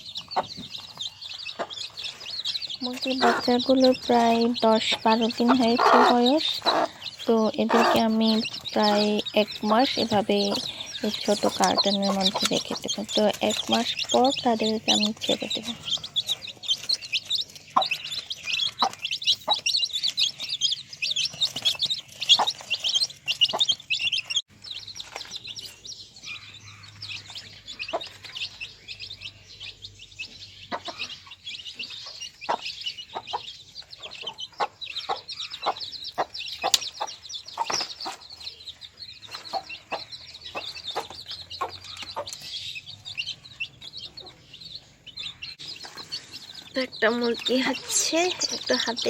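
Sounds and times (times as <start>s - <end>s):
chicks peeping: 0.0s - 49.0s.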